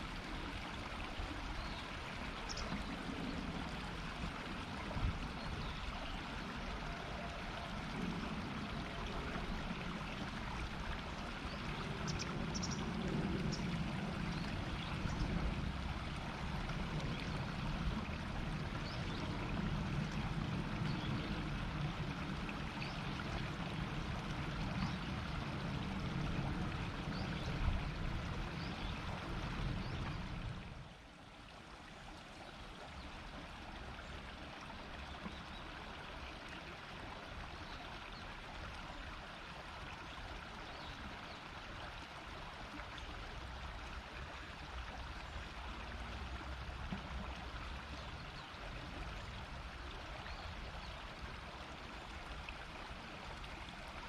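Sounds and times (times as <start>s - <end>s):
river babbling over stones: 0.0s - 54.0s.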